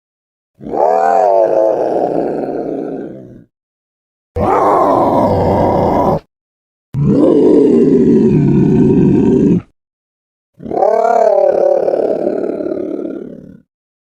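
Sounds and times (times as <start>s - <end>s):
monster roar: 0.6s - 3.5s, 4.4s - 6.3s, 7.0s - 9.7s, 10.6s - 13.7s.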